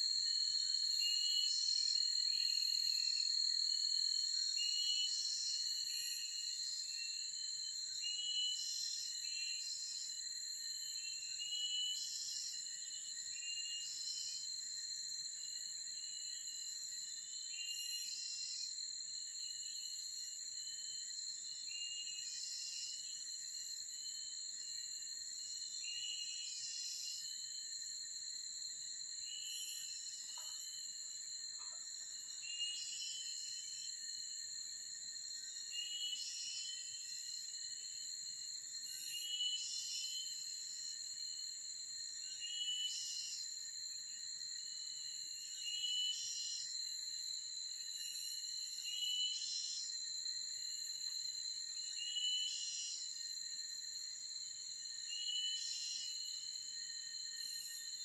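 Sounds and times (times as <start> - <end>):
insect chirping calls: 0.0 - 58.0
high-pitched insect drone: 29.2 - 58.0.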